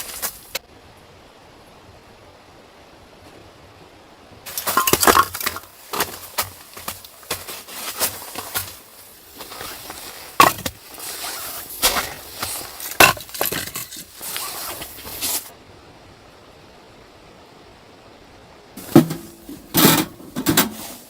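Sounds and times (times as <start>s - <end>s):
faint steady hiss: 0.0s - 21.0s
sharp knocks and crunching impacts: 4.5s - 15.5s, 18.8s - 20.8s.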